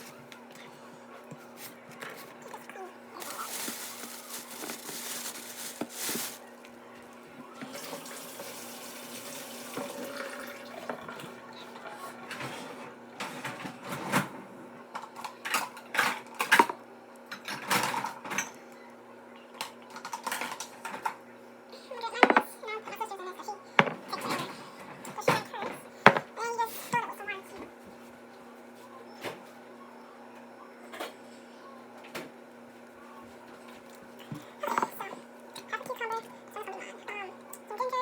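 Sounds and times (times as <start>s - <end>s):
water running: 7.4s - 12.4s.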